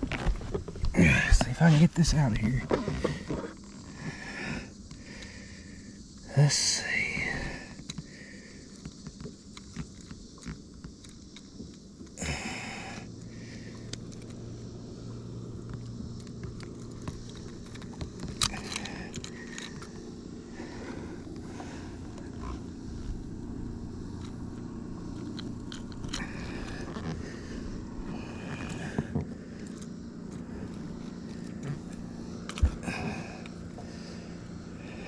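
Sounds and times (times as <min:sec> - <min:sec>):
handling clicks and scrapes: 0:00.0 - 0:03.9, 0:07.7 - 0:12.2, 0:13.7 - 0:14.7, 0:15.4 - 0:34.1
boat motor humming: 0:00.0 - 0:35.0.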